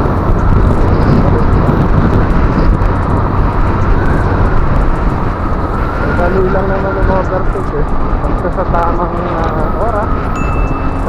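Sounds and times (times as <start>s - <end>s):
rushing wind: 0.0s - 11.0s
scooter road noise: 0.0s - 11.0s.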